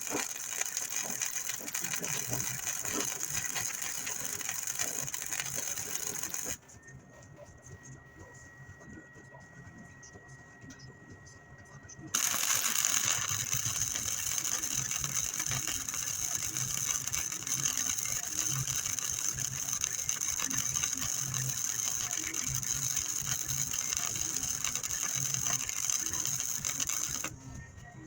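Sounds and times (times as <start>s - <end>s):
welding arc crackling: 0.0s - 6.6s, 12.2s - 27.4s.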